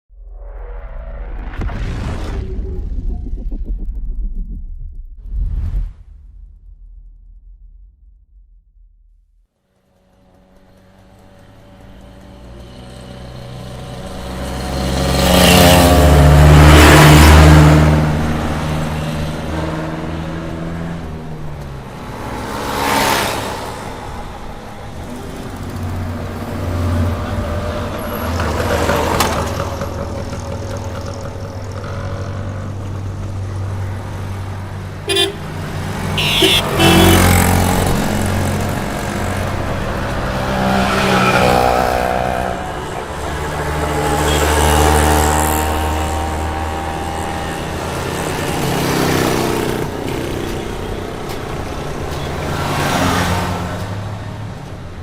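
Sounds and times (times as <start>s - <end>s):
vehicles passing by: 9.4s - 55.0s
steady engine hum: 23.4s - 52.6s
car horn toots: 35.1s - 37.8s.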